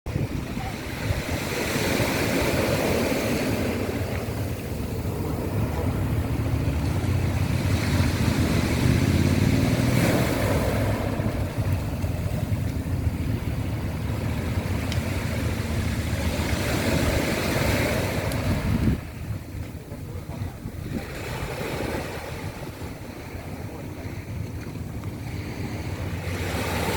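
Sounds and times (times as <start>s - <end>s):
waves washing on pebble beach: 0.2s - 26.9s
steady low rumble: 2.0s - 26.9s.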